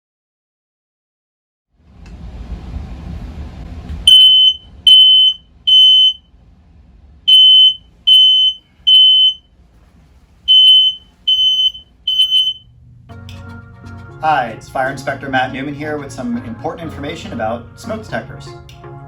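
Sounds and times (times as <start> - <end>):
low rushing noise: 1.8 - 13.1
smoke alarm beeping: 4.1 - 6.2, 7.3 - 9.4, 10.5 - 12.6.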